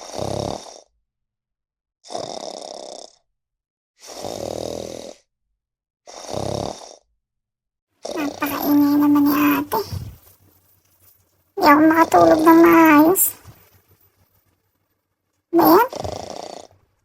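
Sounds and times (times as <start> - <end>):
dog snoring: 2.1 - 3.1, 4.0 - 5.2.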